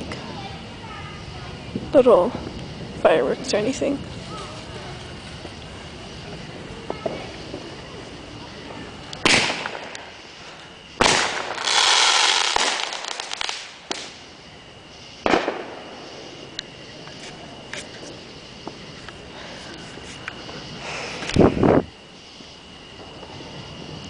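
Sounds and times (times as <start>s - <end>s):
fireworks crackling: 0.0s - 24.0s
fireworks bangs: 0.2s - 19.3s.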